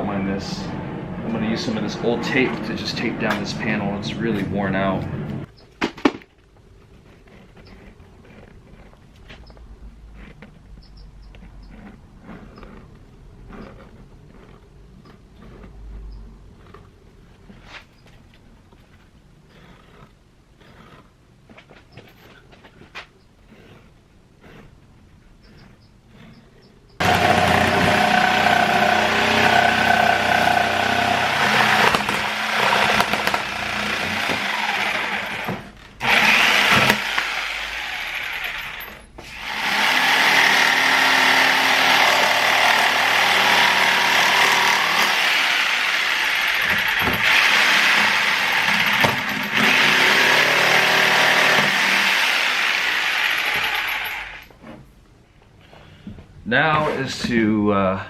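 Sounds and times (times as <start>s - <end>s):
handheld power tool cutting: 27.0s - 54.5s.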